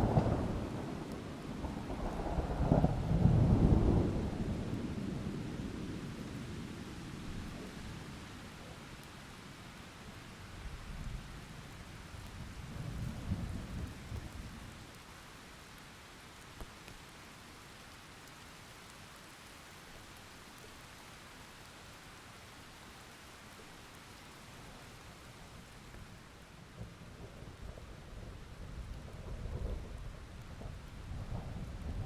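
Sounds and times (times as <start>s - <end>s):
thunder rumbling: 0.0s - 6.2s, 26.8s - 32.0s
steady rain: 0.0s - 32.0s.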